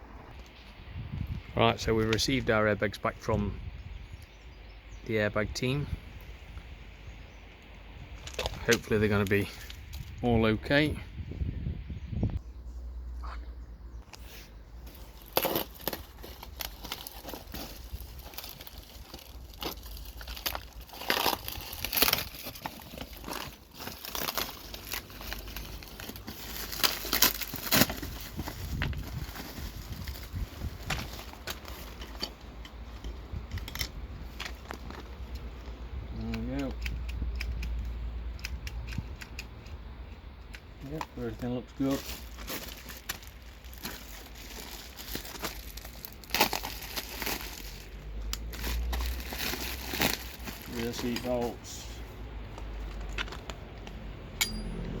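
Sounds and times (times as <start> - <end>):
packaging crinkling and rustling: 14.8 - 35.8, 40.8 - 51.6, 52.4 - 53.9.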